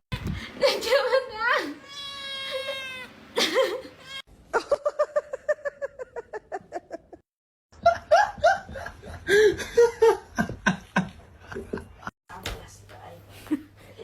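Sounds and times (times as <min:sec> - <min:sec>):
person laughing: 0:03.4 - 0:07.2.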